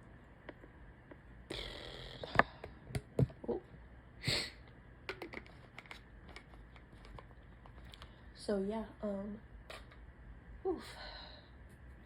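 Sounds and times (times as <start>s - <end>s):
woman sniffing: 4.2s - 4.6s.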